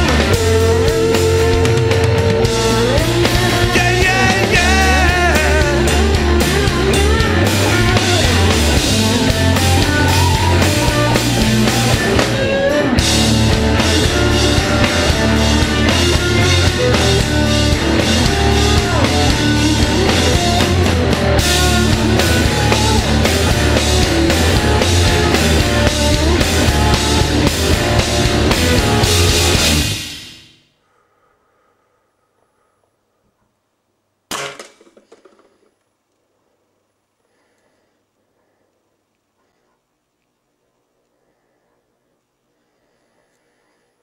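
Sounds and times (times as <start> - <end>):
backing music with drum beat: 0.0 - 30.5.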